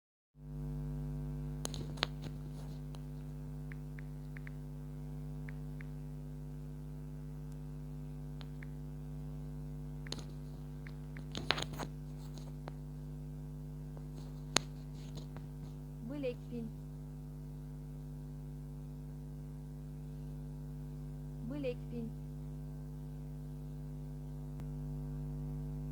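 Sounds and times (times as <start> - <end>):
electrical hum: 0.4 - 25.9
small clicks and taps: 1.6 - 4.7, 8.4 - 8.8, 10.0 - 12.8, 14.0 - 15.8.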